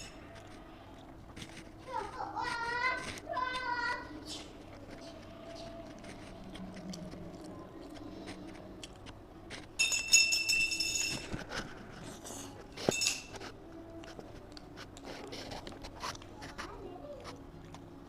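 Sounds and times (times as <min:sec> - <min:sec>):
chewing and mouth sounds: 0:00.2 - 0:09.7, 0:13.8 - 0:18.0.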